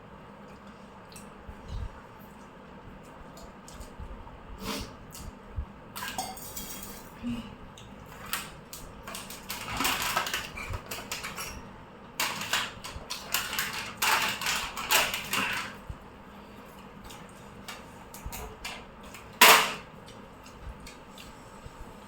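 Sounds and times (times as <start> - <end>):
dishes and cutlery clattering: 6.0 - 7.1, 12.2 - 15.8.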